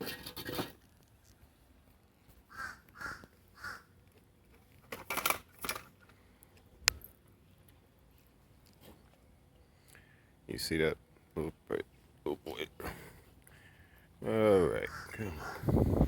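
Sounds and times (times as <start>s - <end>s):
blackbirds harsh calls: 2.5s - 3.9s, 14.8s - 16.0s.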